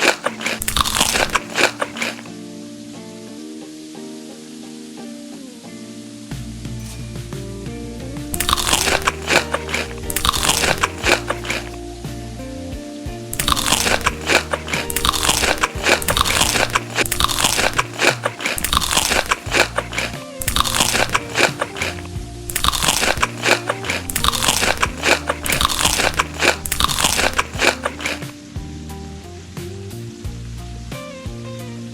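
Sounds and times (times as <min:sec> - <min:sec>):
crunching crisp food: 0:00.0 - 0:02.3, 0:08.4 - 0:11.8, 0:13.4 - 0:28.3
background music with low notes: 0:02.3 - 0:31.9.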